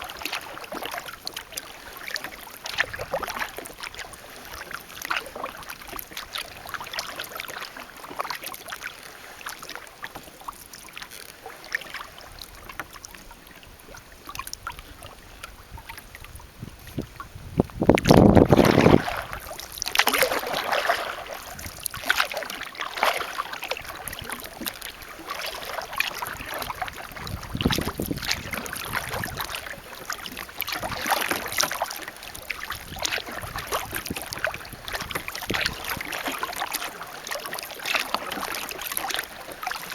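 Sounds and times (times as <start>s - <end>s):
paddle strokes splashing water: 0.0s - 39.9s
wind hitting microphone: 15.7s - 19.4s, 27.1s - 29.5s.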